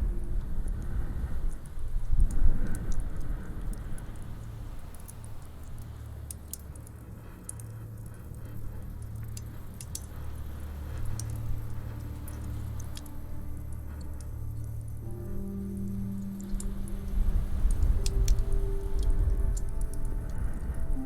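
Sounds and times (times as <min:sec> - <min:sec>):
low steady fire rumble: 0:00.0 - 0:21.0
fire crackling and popping: 0:01.5 - 0:14.8.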